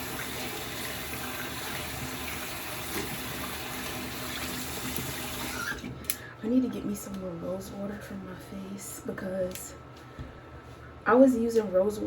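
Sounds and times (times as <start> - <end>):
tap running into sink: 0.0 - 5.9.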